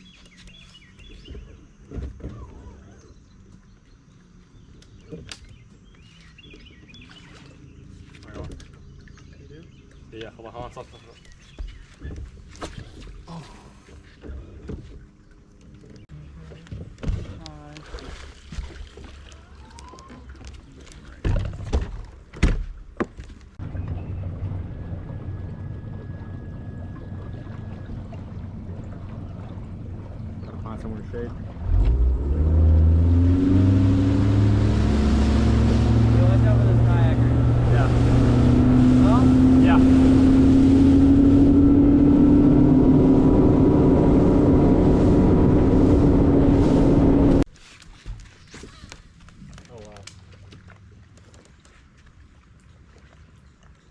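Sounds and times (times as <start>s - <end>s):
boat motor humming: 0.0s - 47.5s
wind noise: 37.2s - 47.4s.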